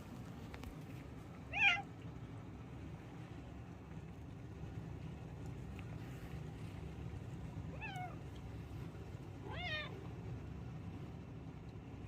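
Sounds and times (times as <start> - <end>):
steady low hum: 0.0 - 12.0
cat meowing: 1.5 - 1.9, 7.7 - 8.2, 9.4 - 10.0.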